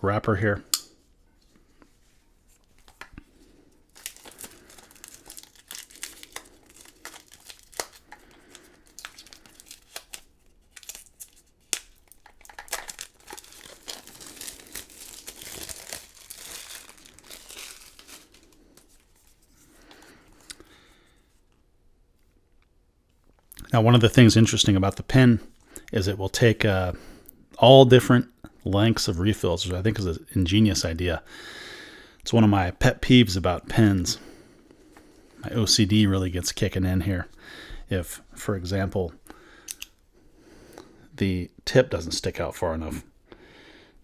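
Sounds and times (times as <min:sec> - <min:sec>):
plastic wrapper crinkling: 0:02.6 - 0:20.7.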